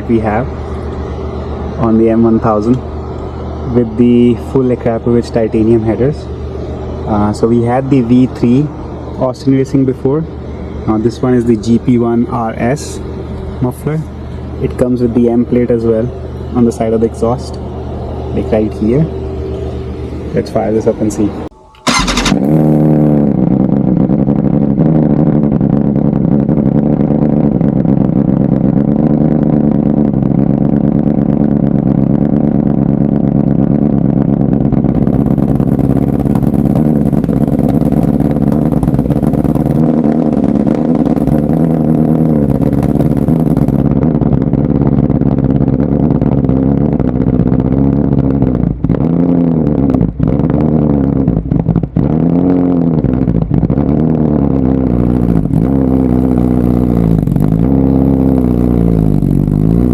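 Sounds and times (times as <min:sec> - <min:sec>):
engine revs dipping and rising: 0:00.0 - 0:27.8, 0:34.9 - 0:44.9, 0:52.0 - 0:59.9
motorcycle engine idling: 0:00.0 - 0:49.0, 0:54.5 - 0:59.9.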